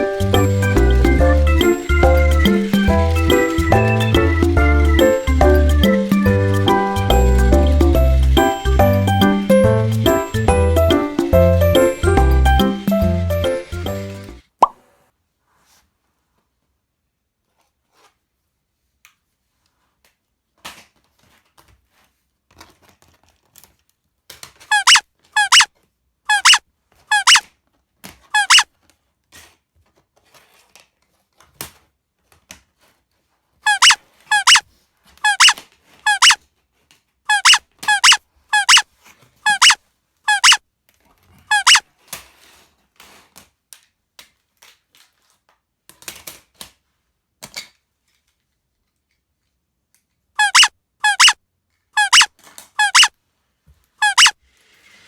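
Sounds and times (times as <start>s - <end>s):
short high squeaks: 24.7s - 25.7s, 26.3s - 27.4s, 28.4s - 28.6s, 33.7s - 34.6s, 35.2s - 36.4s, 37.3s - 38.8s, 39.4s - 40.6s, 41.5s - 41.8s, 50.4s - 51.4s, 52.0s - 53.1s, 54.0s - 54.4s.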